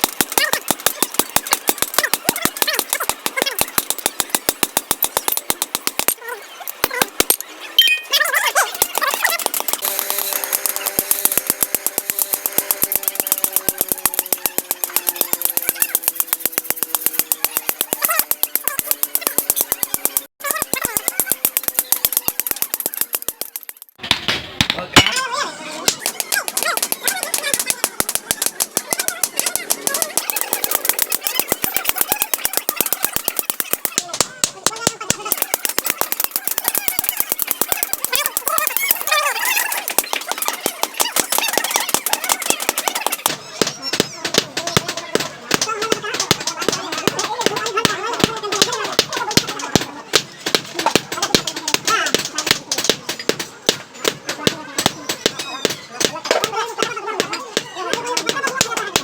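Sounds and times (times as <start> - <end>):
hammer striking hot steel on anvil: 0.0 - 8.0.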